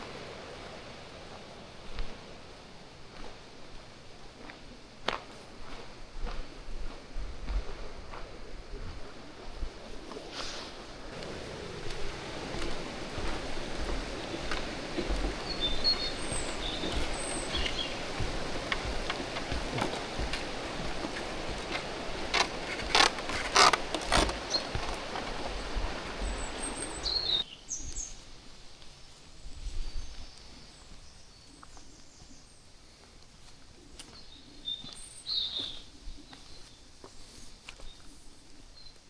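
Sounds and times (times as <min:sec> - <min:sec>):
waterfall rushing: 0:11.1 - 0:27.4
bird chirps: 0:15.4 - 0:18.5, 0:26.2 - 0:27.4.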